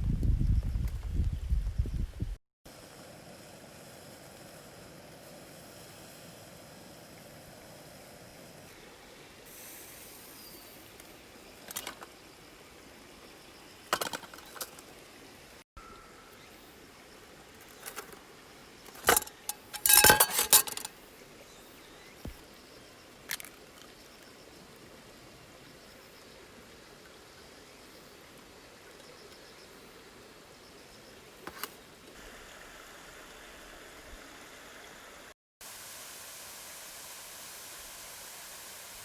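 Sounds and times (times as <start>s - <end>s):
faint outdoor hiss: 0.0s - 39.0s
small hard objects clinking: 18.9s - 20.9s.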